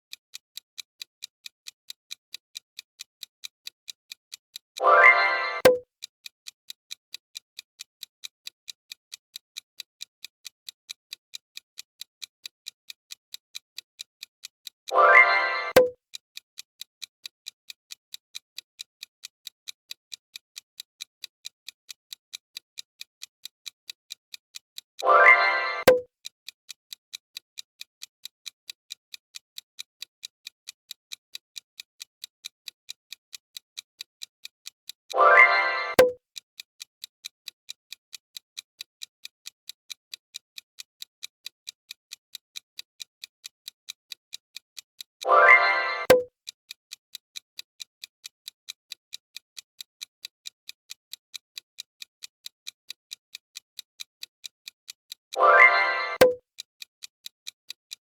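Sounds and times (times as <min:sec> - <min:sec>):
clock ticking quickly: 0:00.1 - 0:05.8, 0:06.7 - 0:26.1, 0:26.7 - 0:36.2, 0:36.8 - 0:58.0
sharp click: 0:04.8 - 0:05.8, 0:14.9 - 0:16.0, 0:35.2 - 0:36.2, 0:45.4 - 0:46.3.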